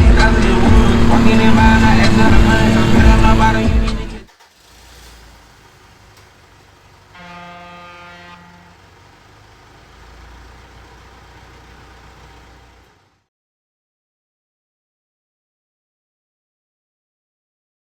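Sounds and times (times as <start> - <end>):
steady low rumble: 0.0 - 4.3
vehicle horn: 0.0 - 4.3, 6.6 - 13.0.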